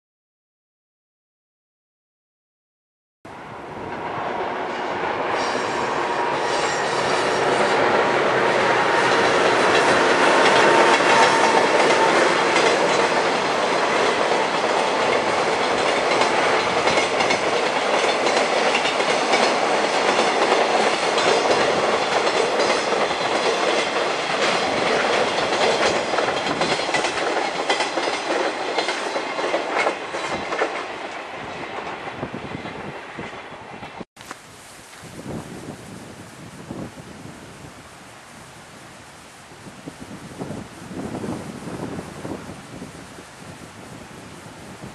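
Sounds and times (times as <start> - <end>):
freight train passing: 3.3 - 34.0, 35.3 - 44.9
wagons rattling over rail joints: 5.3 - 32.0.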